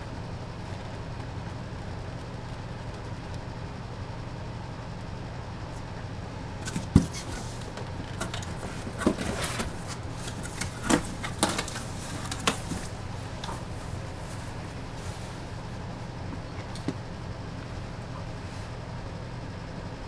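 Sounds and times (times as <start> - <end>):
steady low hum: 0.0 - 20.0
packaging knocks and rustles: 6.6 - 15.6.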